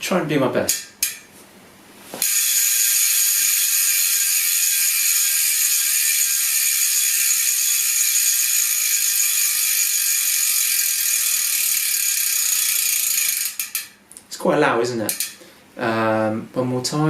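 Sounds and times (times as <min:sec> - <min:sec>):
bicycle freehub ratcheting: 0:02.2 - 0:14.0, 0:15.1 - 0:15.4.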